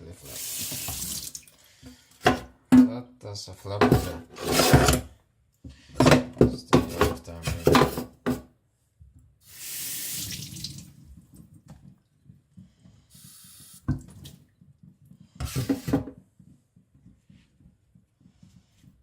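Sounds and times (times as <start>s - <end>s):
water running and splashing: 0.2s - 1.6s, 9.5s - 11.1s.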